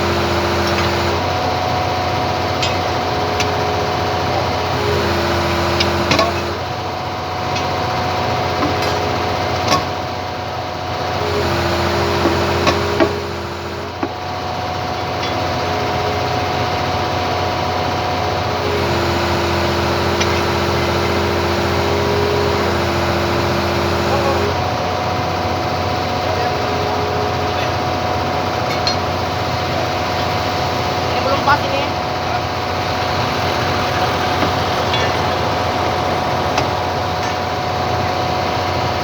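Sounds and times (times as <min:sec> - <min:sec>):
machine hum stepping between pitches: 0:00.0 - 0:01.4, 0:04.6 - 0:06.7, 0:11.2 - 0:14.0, 0:18.5 - 0:24.7
excavator diesel engine running: 0:00.0 - 0:39.0.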